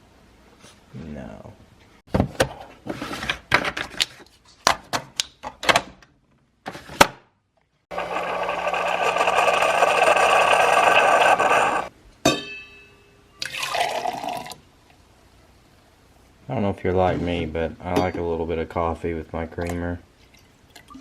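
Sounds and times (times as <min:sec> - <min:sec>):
ringing clink: 0:12.3 - 0:13.4
liquid pouring into a cup: 0:13.4 - 0:14.6.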